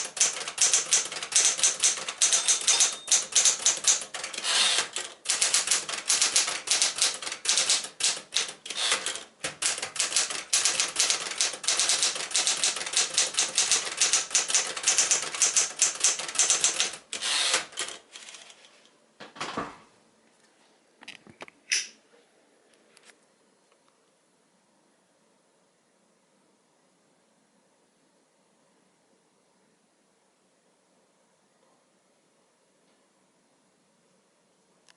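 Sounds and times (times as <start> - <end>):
typewriter clunks and clicks: 0.0 - 18.0
typewriter keystrokes: 0.0 - 18.5.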